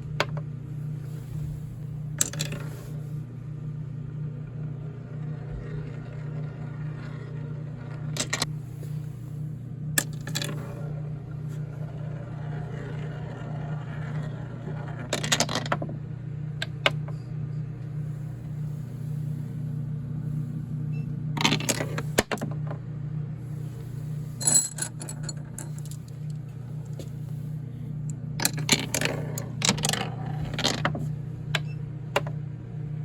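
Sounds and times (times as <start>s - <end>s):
steady low hum: 0.0s - 33.0s
marbles clacking in marble run: 28.4s - 31.0s.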